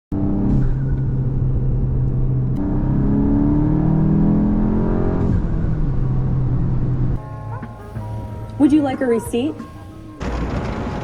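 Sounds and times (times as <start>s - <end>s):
car engine revving: 0.1s - 8.6s, 10.1s - 11.0s.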